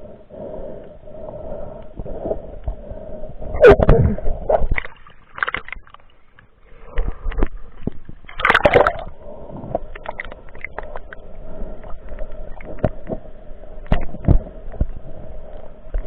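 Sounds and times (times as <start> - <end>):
sea water splashing: 3.6 - 13.1.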